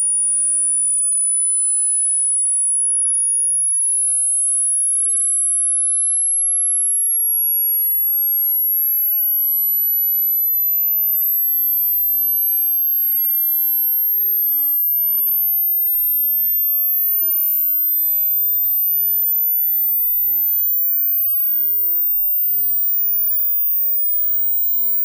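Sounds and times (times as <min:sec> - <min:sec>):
high-pitched rising test tone: 0:22.6 - 0:25.0.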